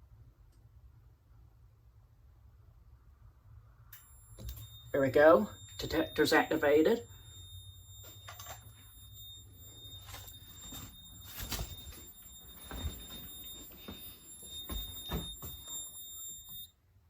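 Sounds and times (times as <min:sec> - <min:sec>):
alarm panel high-pitched tone: 0:04.0 - 0:16.8.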